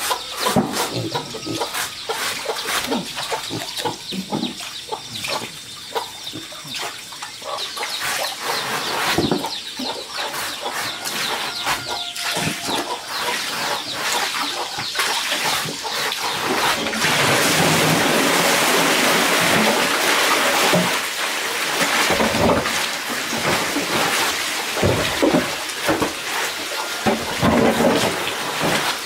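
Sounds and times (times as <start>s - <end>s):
heavy rain splashes: 16.8s - 29.0s.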